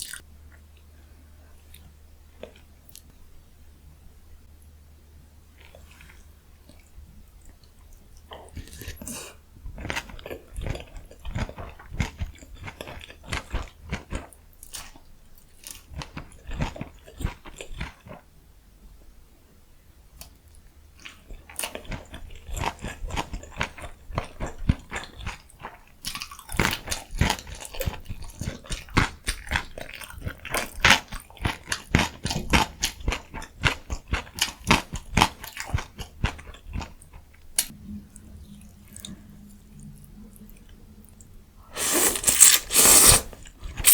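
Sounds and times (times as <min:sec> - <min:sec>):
person chewing food: 0:21.0 - 0:37.8, 0:41.8 - 0:43.9.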